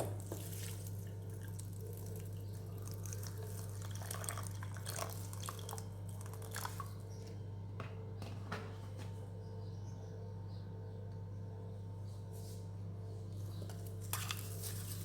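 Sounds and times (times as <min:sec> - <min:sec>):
water pouring into a pot: 0:00.4 - 0:06.8.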